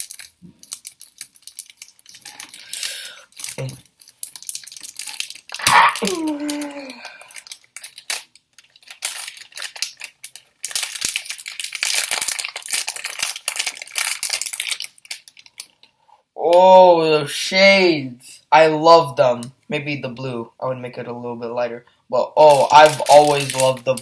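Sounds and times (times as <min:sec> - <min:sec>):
plastic packaging crinkling and tearing: 0:00.0 - 0:15.9, 0:22.4 - 0:24.0.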